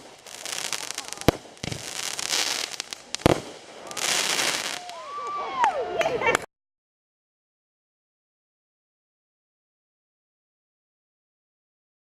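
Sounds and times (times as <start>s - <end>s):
firework bangs: 0.0s - 5.2s
firework hissing and crackling: 0.0s - 5.2s.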